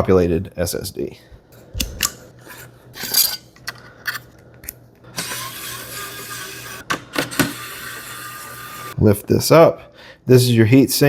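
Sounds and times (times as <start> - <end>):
electric screwdriver running: 5.1 - 9.0.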